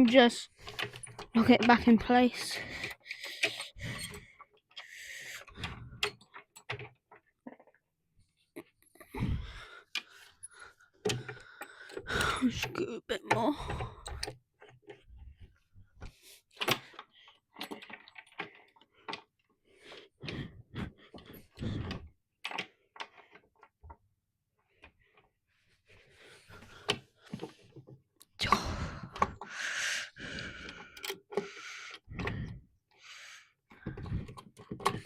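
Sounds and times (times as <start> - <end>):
metal parts clicking and clunking: 0.0 - 4.8, 33.8 - 35.0.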